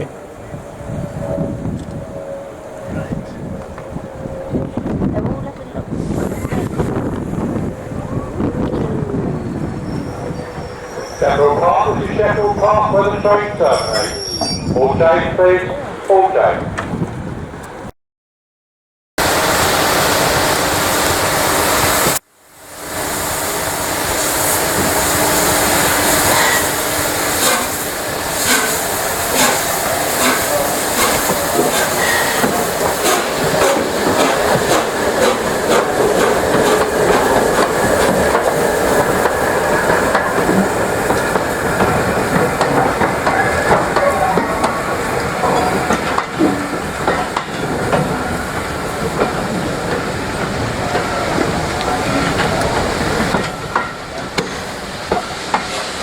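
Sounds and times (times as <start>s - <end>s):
steam hissing: 5.9s - 7.7s, 19.2s - 56.0s
wheels clicking over rail joints: 31.0s - 55.8s.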